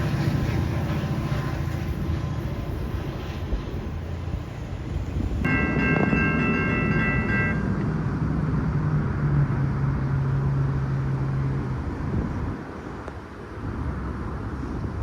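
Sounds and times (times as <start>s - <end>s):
train rumbling past: 0.0s - 13.0s
train horn chord: 5.5s - 7.8s.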